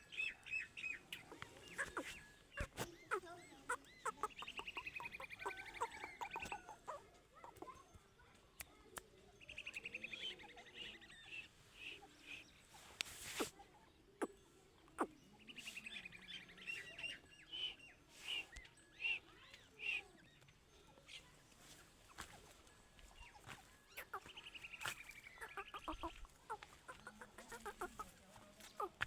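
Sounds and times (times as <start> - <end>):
quick bird ticking notes: 0.5 - 7.8, 23.2 - 29.0
bird clucking notes: 1.1 - 7.8, 14.2 - 16.0, 23.2 - 29.0
game birds rattling trills: 1.2 - 7.8, 23.9 - 28.2.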